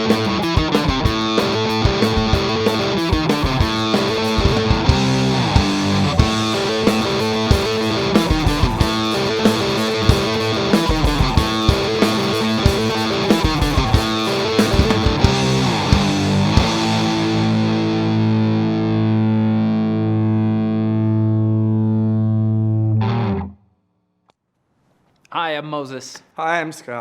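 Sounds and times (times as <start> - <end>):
drums: 0.0 - 18.9
bass guitar: 0.0 - 23.6
distorted electric guitar riff: 0.0 - 23.6.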